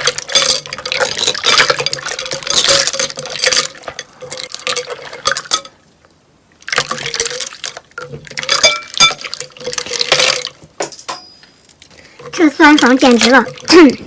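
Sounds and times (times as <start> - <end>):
glass containers clinking: 0.0 - 5.8, 6.7 - 11.6
liquid being stirred and poured: 0.0 - 14.0.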